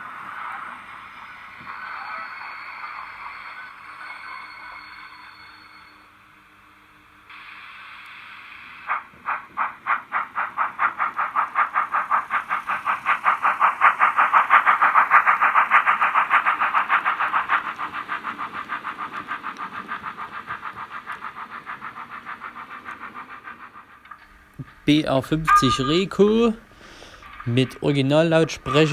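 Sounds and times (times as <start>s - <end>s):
steam hiss: 0.0s - 28.9s
steam locomotive exhaust chuffs: 0.0s - 28.9s.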